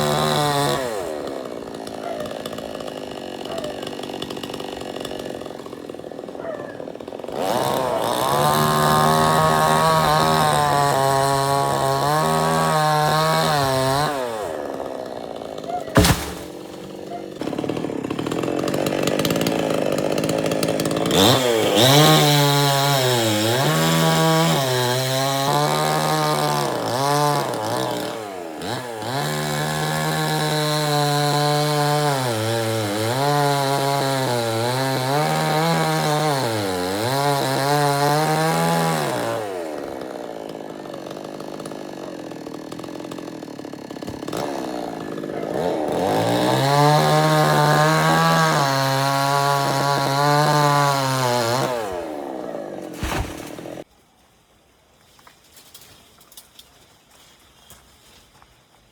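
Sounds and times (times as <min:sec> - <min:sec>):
chainsaw cutting wood: 0:00.0 - 0:53.9.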